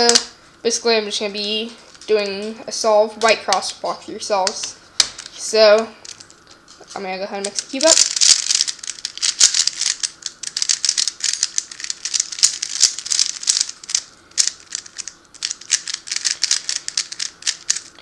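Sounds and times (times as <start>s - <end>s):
puzzle cube clicking: 7.4s - 17.9s.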